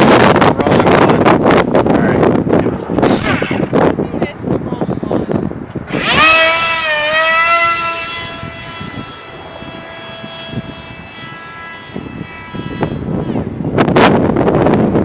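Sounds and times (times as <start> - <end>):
electric motor and propeller whining: 2.7 - 4.4, 5.6 - 15.0.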